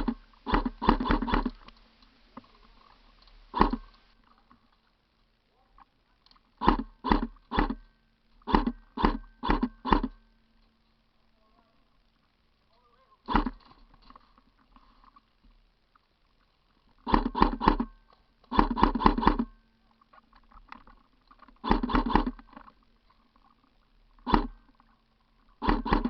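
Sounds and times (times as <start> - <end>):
airsoft guns firing: 0.0 - 1.6, 8.4 - 10.2, 17.0 - 17.9, 18.5 - 19.5, 21.6 - 22.4, 25.6 - 26.0.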